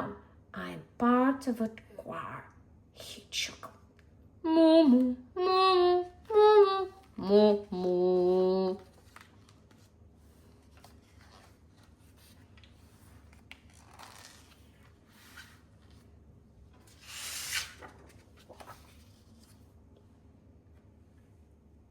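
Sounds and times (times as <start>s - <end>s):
rustling and handling noises: 7.0s - 20.2s.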